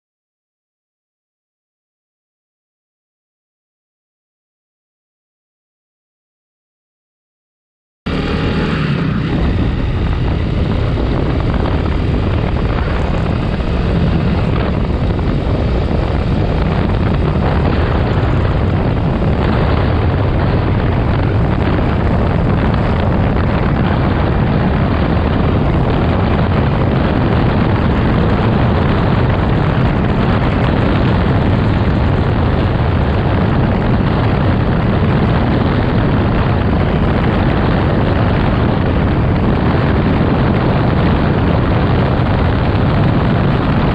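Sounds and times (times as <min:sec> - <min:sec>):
wind buffeting camera: 0:08.1 - 0:43.9.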